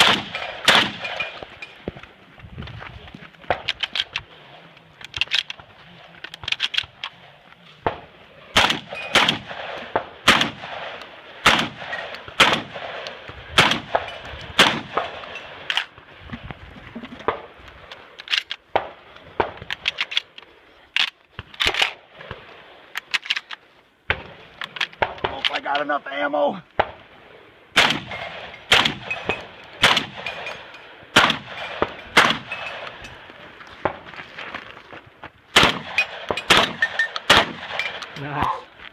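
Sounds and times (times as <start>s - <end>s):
shotgun shots: 0.0s - 1.4s, 7.8s - 15.9s, 27.8s - 33.0s, 35.5s - 38.2s.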